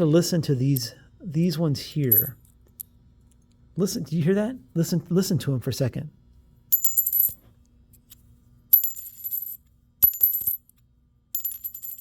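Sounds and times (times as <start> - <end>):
coin bouncing and ringing: 6.7 - 7.4, 8.7 - 10.7, 11.3 - 12.0.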